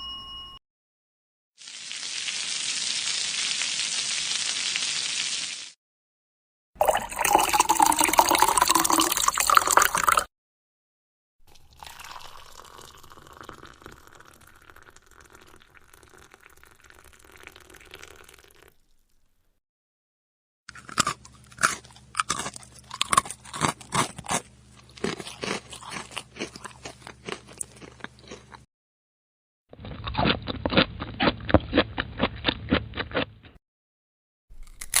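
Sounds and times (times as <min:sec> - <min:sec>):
person crunching crisp food: 0:20.7 - 0:28.7, 0:29.8 - 0:33.5, 0:34.5 - 0:35.0.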